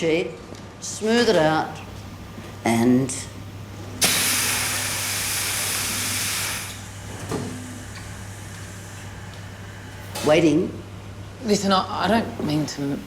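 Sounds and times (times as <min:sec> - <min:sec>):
steam press hissing: 0:01.7 - 0:09.2.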